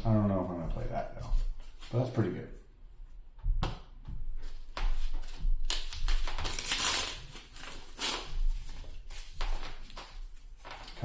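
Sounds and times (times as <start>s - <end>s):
cards and packaging rustling: 5.0s - 11.0s.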